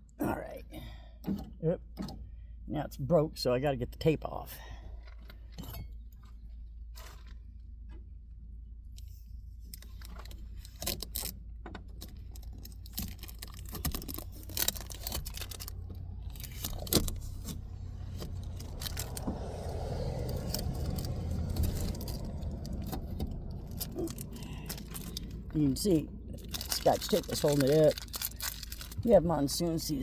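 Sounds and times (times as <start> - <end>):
handling clicks and clinks: 9.7 - 30.0.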